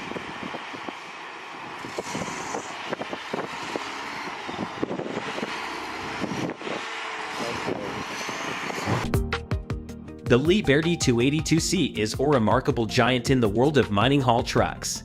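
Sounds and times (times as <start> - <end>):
heavy machinery working: 0.0 - 9.2.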